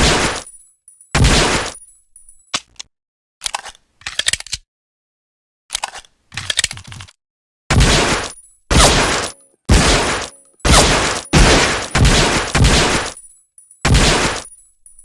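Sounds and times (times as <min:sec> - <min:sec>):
pistol shots: 0:07.7 - 0:13.2, 0:13.9 - 0:14.5.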